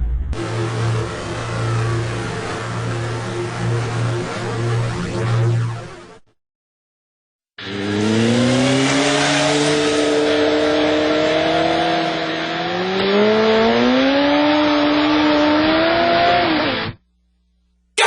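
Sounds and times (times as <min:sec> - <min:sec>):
motorcycle engine at high revs: 0:07.6 - 0:17.0.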